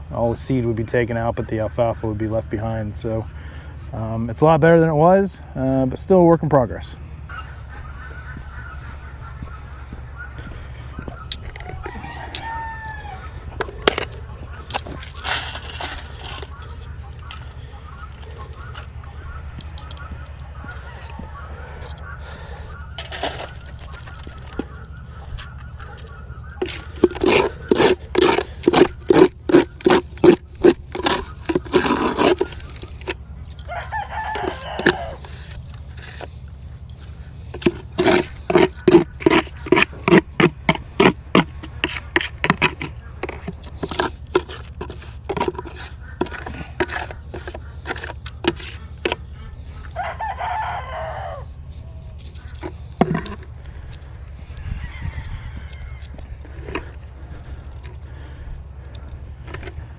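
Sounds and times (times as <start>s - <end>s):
waterfowl honking: 0.0s - 59.9s
rooster crowing: 7.3s - 30.4s, 31.2s - 40.2s, 44.7s - 59.2s.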